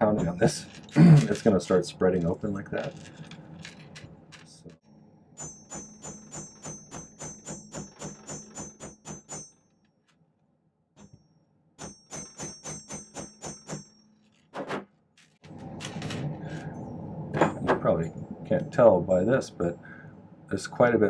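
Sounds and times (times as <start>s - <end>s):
hammer tapping on silver wire: 5.4s - 9.6s, 11.8s - 14.0s.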